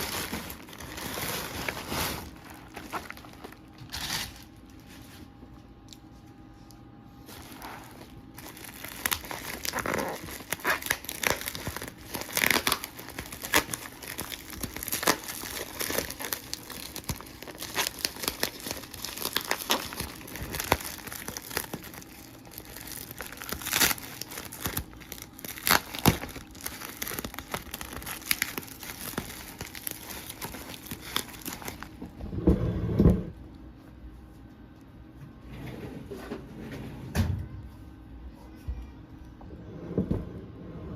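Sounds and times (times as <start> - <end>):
plastic packaging crinkling and tearing: 0.0 - 6.0, 7.2 - 32.0.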